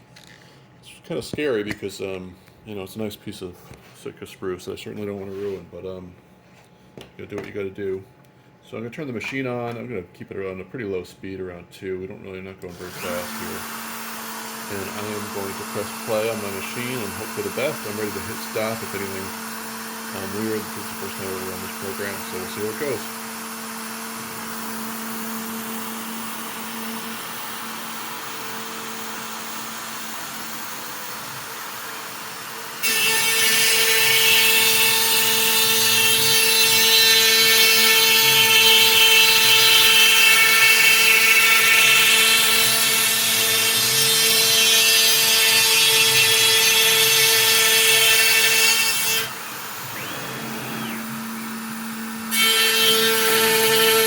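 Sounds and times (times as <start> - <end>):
router cutter milling wood: 12.6 - 54.0
cnc router spindle running: 12.7 - 54.0.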